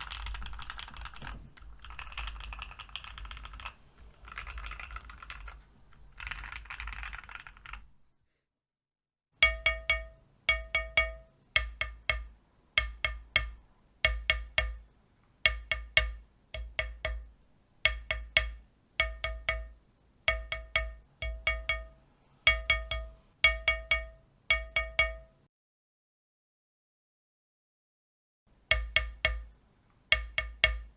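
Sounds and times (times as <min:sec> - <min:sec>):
mechanical keyboard typing: 0:00.0 - 0:07.9.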